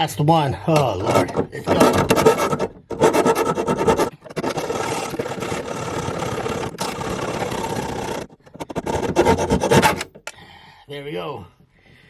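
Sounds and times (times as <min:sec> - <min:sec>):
hacksaw cutting nail: 0:00.8 - 0:10.3.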